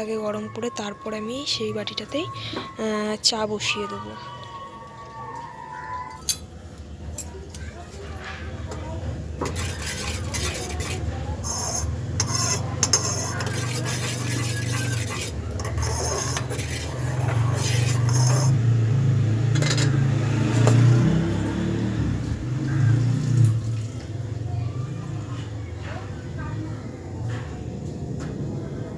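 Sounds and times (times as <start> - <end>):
metal utensils scraping a pan: 8.2 - 18.7, 19.4 - 21.3.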